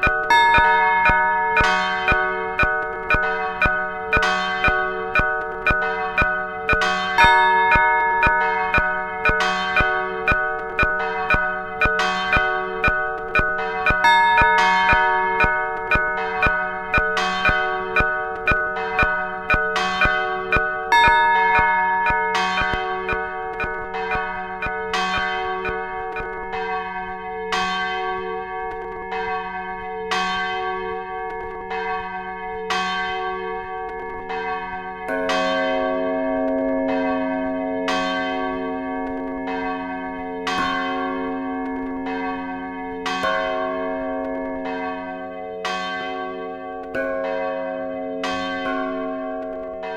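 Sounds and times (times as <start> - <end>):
deeper bell ringing: 0.0 - 26.9
church bells pealing: 0.0 - 49.9.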